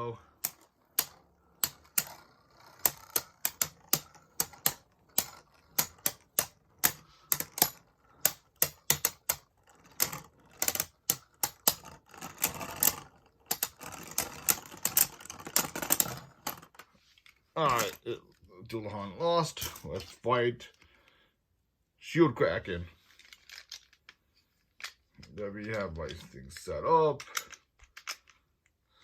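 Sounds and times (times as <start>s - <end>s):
spinning tops clashing plastic clacks: 0.4s - 16.8s.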